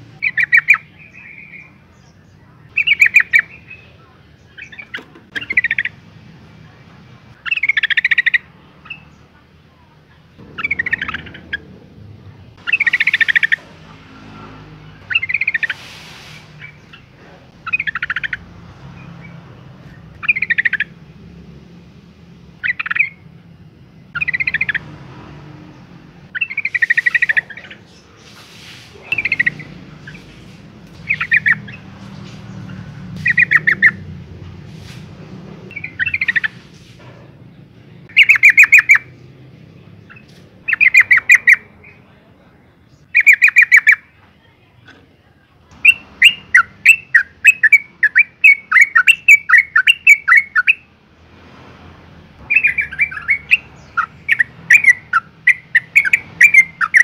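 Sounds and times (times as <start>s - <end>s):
bird chattering calls: 0.1s - 6.1s, 7.2s - 9.4s, 10.3s - 21.3s, 22.6s - 23.3s, 24.1s - 34.2s, 35.7s - 36.9s, 38.0s - 39.3s, 40.0s - 42.2s, 43.0s - 44.2s, 45.8s - 50.9s, 52.4s - 57.0s.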